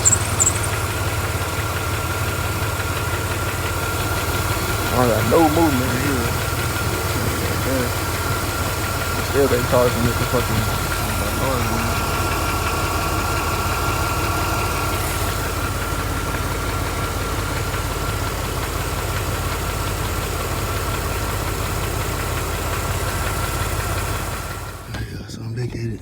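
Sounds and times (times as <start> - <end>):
high-pitched belt whine: 0.0 - 18.4
car engine idling: 0.0 - 26.0
higher tone: 4.3 - 15.4.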